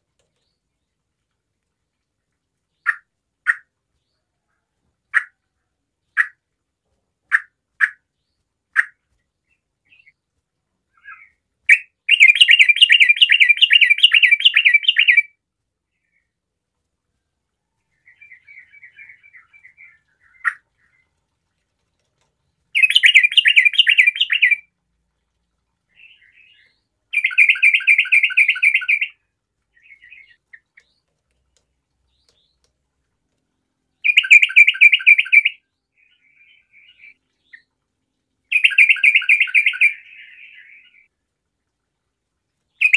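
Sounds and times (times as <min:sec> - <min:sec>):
bird bubbling song: 0:00.0 - 0:06.5, 0:07.3 - 0:16.4, 0:17.2 - 0:42.9
bird sharp chirps: 0:11.0 - 0:15.3, 0:22.8 - 0:24.6, 0:26.0 - 0:29.2, 0:34.0 - 0:37.7, 0:38.5 - 0:41.1.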